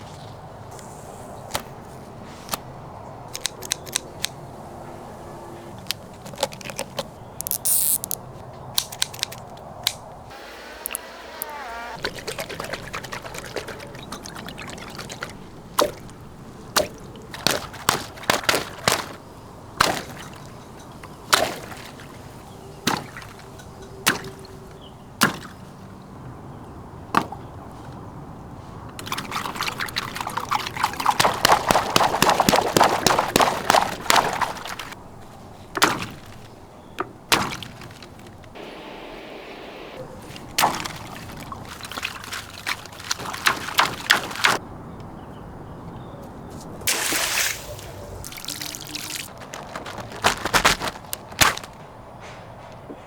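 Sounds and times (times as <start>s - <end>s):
water pouring and trickling: 10.8s - 24.8s, 29.0s - 35.0s, 40.2s - 44.6s, 46.8s - 50.2s
water drips and splashes: 10.8s - 25.9s, 28.8s - 35.0s, 40.2s - 44.6s, 46.8s - 50.1s.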